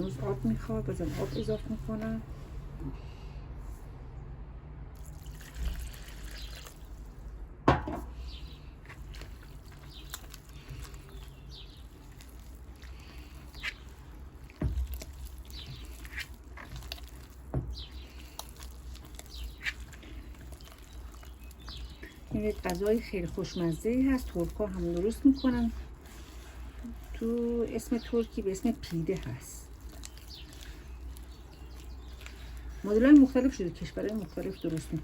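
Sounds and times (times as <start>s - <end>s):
hands kneading wet dough: 0.0s - 4.0s, 4.9s - 7.4s, 8.1s - 35.0s
knocks against bowl: 7.7s - 8.1s.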